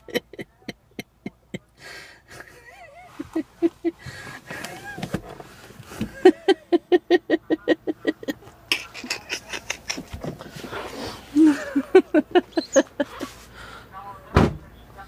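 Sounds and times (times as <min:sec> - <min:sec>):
person laughing hard: 0:00.0 - 0:05.2, 0:05.9 - 0:10.5, 0:11.3 - 0:13.4
breathy gasps: 0:01.8 - 0:02.4.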